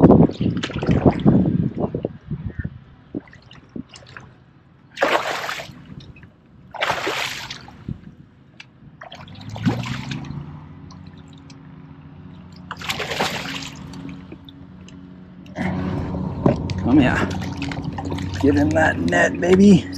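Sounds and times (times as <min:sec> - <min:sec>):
water splashing: 0:03.2 - 0:08.0, 0:09.0 - 0:11.5, 0:12.6 - 0:15.0, 0:15.6 - 0:19.9
water dripping and trickling: 0:09.0 - 0:11.6, 0:12.5 - 0:15.0, 0:16.4 - 0:19.9
steady low hum: 0:12.8 - 0:19.9.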